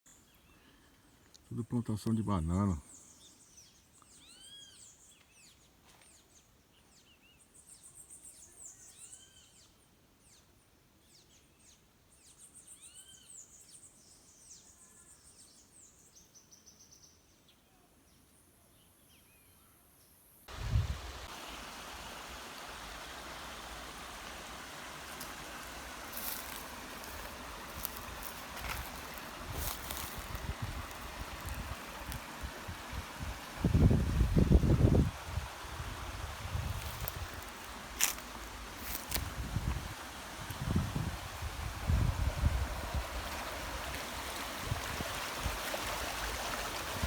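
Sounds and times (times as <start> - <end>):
waterfall rushing: 20.5 - 39.2, 42.6 - 47.0
songbirds chirping: 21.0 - 39.4.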